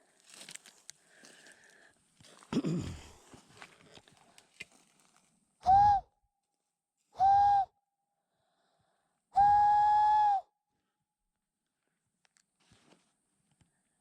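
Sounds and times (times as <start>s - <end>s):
whistle blasts: 5.6s - 6.1s, 7.2s - 7.7s, 9.4s - 10.5s.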